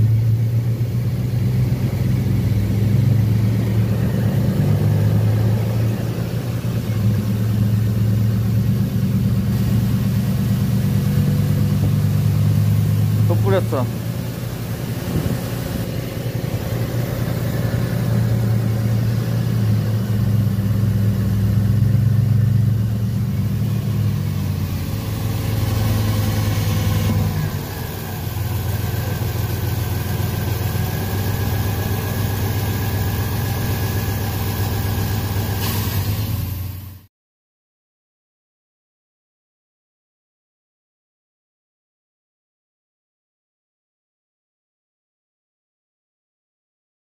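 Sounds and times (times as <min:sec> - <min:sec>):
engine idling rough: 0:00.0 - 0:37.1.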